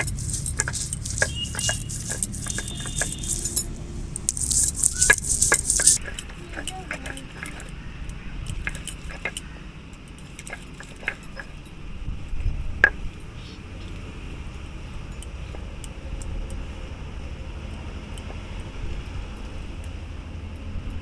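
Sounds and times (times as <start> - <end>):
stone clicks: 0.0 - 6.0
stone grinding rumble: 0.0 - 6.0.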